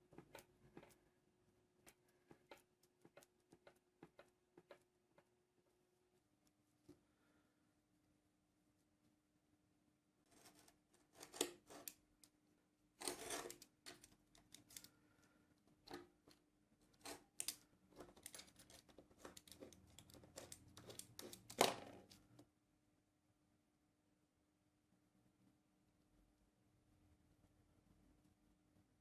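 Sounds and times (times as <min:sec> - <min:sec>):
hand tool scrapes and clicks: 0:10.4 - 0:12.0, 0:13.0 - 0:14.9, 0:17.0 - 0:22.2.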